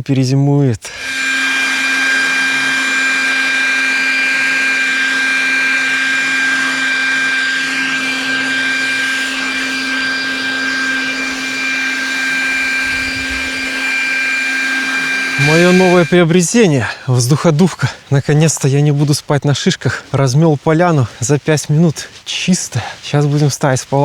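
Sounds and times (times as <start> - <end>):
leaf blower running: 0.9 - 17.1.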